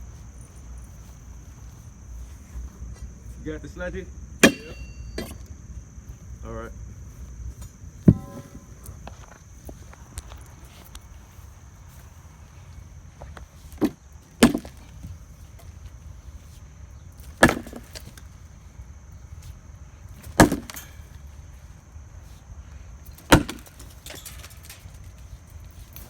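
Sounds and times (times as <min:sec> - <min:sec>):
sledgehammer hitting concrete: 0:04.4 - 0:05.4, 0:08.1 - 0:08.7, 0:14.4 - 0:14.8, 0:17.4 - 0:18.1, 0:20.3 - 0:20.9, 0:23.3 - 0:24.3.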